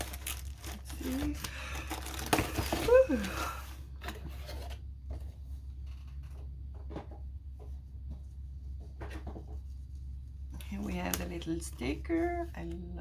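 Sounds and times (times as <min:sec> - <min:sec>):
packaging rustling and tapping: 0:00.0 - 0:03.3
steady low hum: 0:00.0 - 0:13.0.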